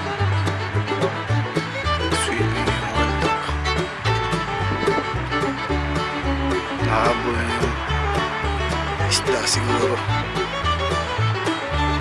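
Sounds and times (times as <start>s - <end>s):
upbeat bluegrass tune with fiddle: 0.0s - 12.0s.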